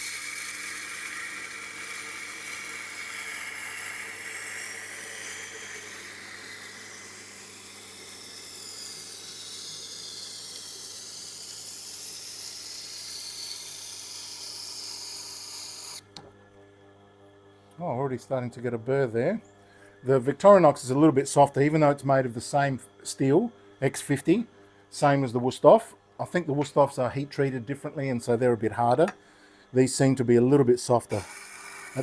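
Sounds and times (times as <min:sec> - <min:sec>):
blade grinding on a grindstone: 0:00.0 - 0:16.1, 0:31.1 - 0:32.0
motor hum: 0:00.0 - 0:20.4, 0:30.9 - 0:32.0.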